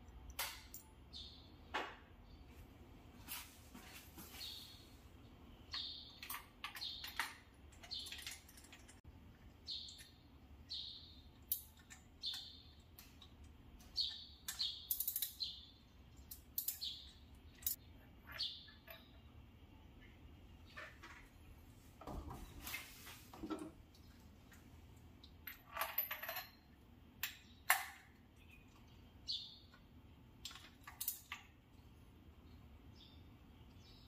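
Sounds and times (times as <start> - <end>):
birds chirping: 1.0 - 2.6, 3.9 - 21.6.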